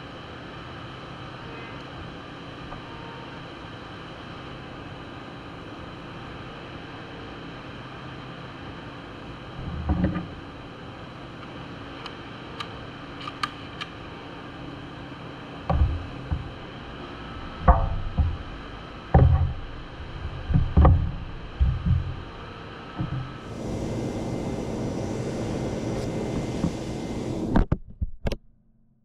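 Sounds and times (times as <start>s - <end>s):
machine hum: 14.1s - 28.0s
knocks and clunks: 15.7s - 16.5s, 17.6s - 22.3s, 23.0s - 23.4s.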